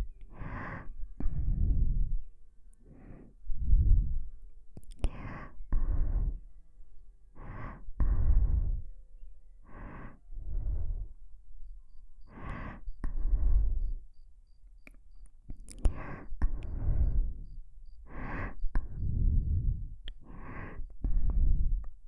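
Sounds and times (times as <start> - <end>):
slow close breathing: 0.0 - 14.6, 15.6 - 22.0
lip clicks: 4.8 - 5.2, 14.6 - 16.9, 20.0 - 21.0.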